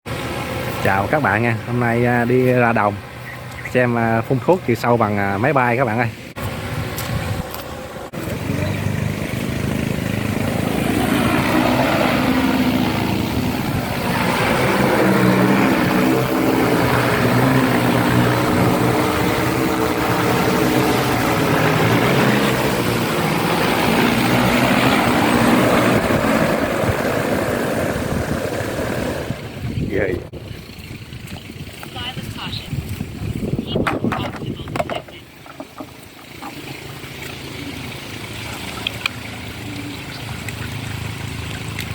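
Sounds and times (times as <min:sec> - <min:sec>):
drone propellers buzzing: 0:00.1 - 0:31.2.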